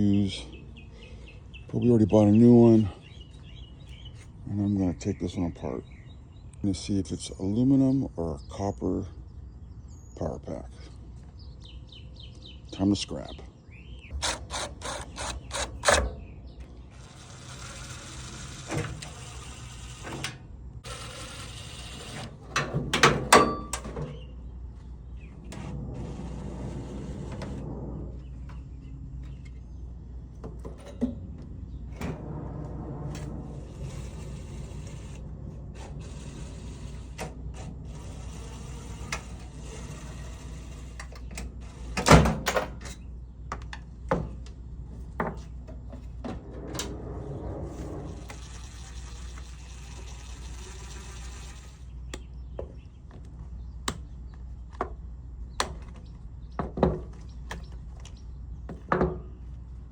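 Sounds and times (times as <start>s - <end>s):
metal casing knocks and clanks: 22.6s - 24.3s.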